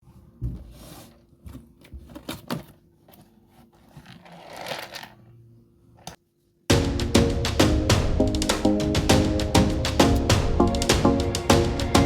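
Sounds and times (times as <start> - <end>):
packaging rustle: 1.1 - 5.2.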